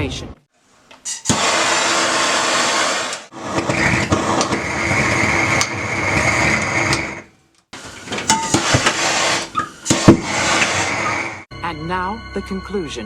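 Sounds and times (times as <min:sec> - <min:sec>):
power tool grinding and whining: 0:01.0 - 0:07.2.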